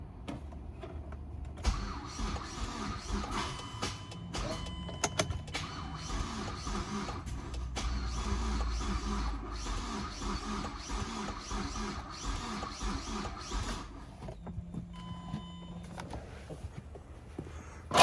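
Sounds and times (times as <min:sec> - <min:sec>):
starter motor cranking engine: 0:01.6 - 0:14.5.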